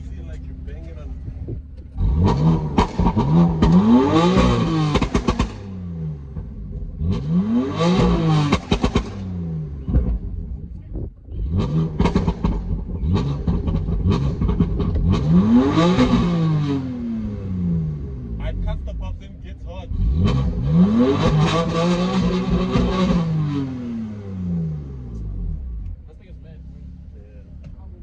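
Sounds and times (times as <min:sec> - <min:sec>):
exhaust pops and crackles: 0:00.0 - 0:16.9, 0:27.6 - 0:28.0
car engine revving: 0:00.0 - 0:28.0.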